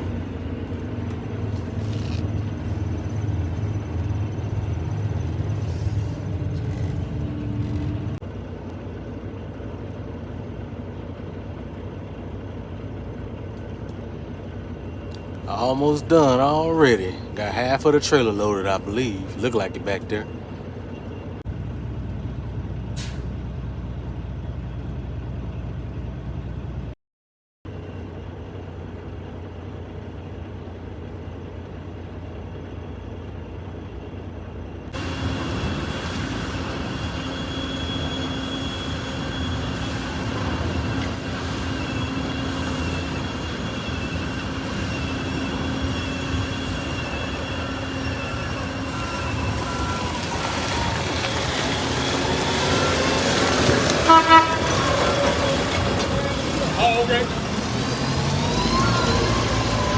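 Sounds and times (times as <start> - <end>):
diesel engine running: 0.0 - 27.0, 27.7 - 59.9
thin high whine: 35.0 - 57.6.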